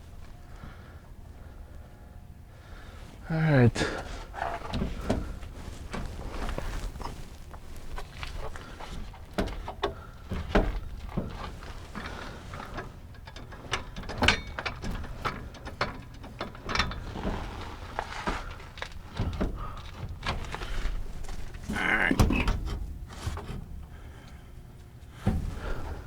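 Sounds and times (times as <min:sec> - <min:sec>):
metal parts and tools clanking: 0:10.4 - 0:19.8.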